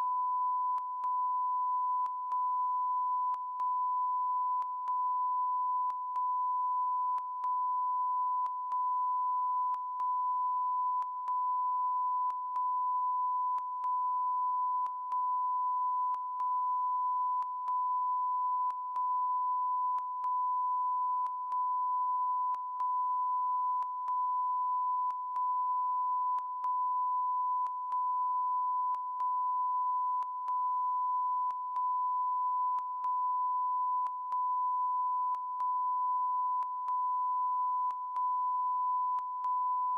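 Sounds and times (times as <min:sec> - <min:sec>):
continuous beep tone: 0:00.0 - 0:39.9.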